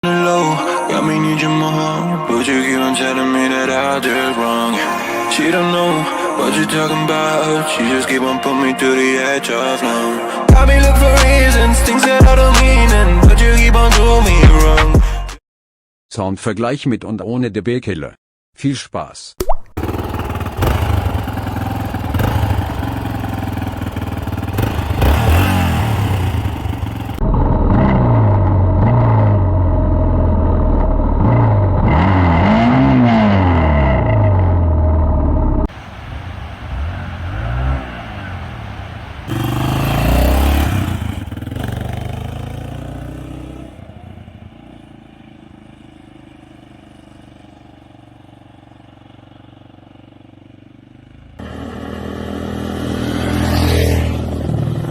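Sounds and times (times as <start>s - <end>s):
motorcycle engine idling: 19.8s - 27.3s, 35.7s - 51.6s
motorcycle engine revving: 19.8s - 54.9s.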